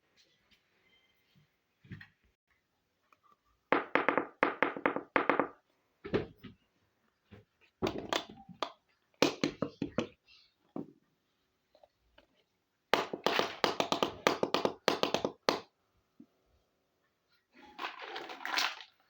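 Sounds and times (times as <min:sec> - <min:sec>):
toy pieces clicking and knocking: 0:13.0 - 0:15.7.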